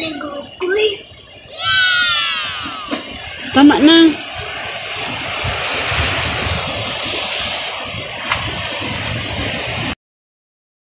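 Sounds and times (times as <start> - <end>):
river water rushing: 1.4 - 10.0.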